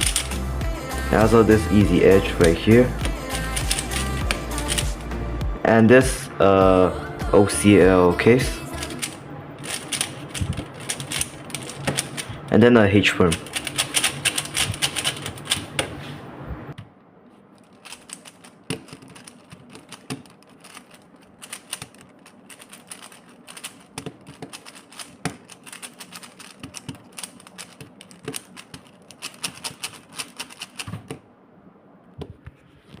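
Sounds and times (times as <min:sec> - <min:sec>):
puzzle cube plastic clicks: 0:00.0 - 0:00.4, 0:08.8 - 0:12.4, 0:13.2 - 0:15.8, 0:17.6 - 0:31.2.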